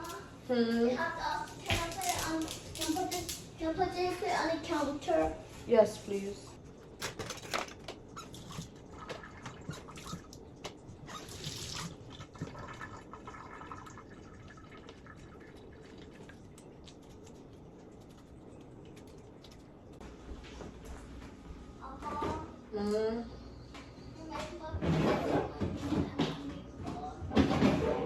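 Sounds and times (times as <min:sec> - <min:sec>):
water trickling: 0:08.3 - 0:16.9.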